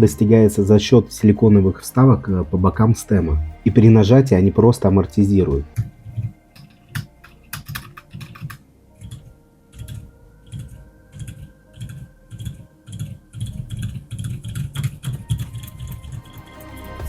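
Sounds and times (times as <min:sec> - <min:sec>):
muffled mechanical keyboard typing: 0:05.7 - 0:16.6.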